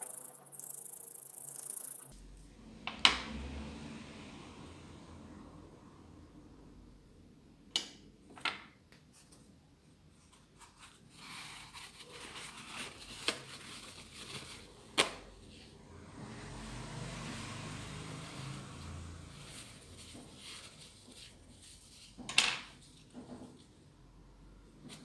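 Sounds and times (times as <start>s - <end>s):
light rustling and scraping: 18.3s - 23.9s.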